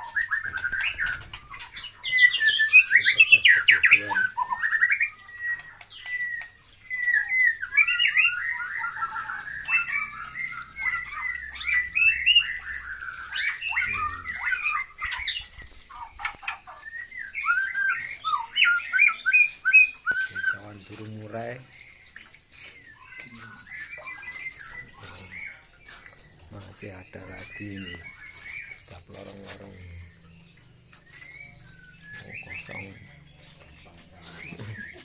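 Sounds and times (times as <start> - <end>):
birds singing whistled phrases: 0.0 - 35.0.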